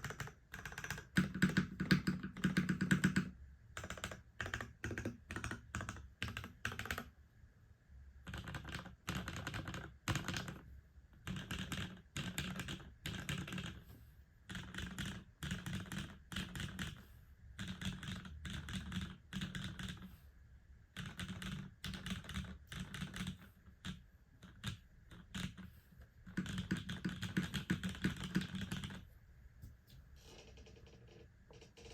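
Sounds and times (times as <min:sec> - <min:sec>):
mechanical keyboard typing: 0:00.0 - 0:07.1, 0:08.2 - 0:10.6, 0:11.2 - 0:13.8, 0:14.5 - 0:17.0, 0:17.6 - 0:20.1, 0:20.9 - 0:29.0.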